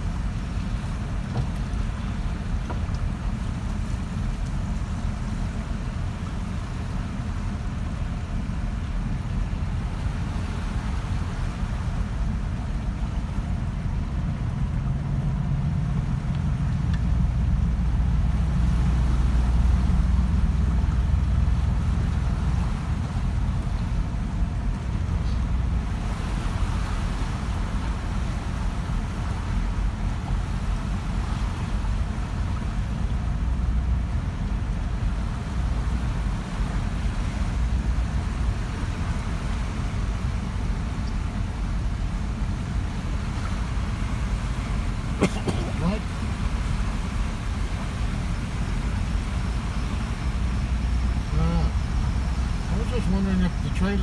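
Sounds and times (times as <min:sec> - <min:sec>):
car engine and tyres rumbling: 0:00.0 - 0:54.0.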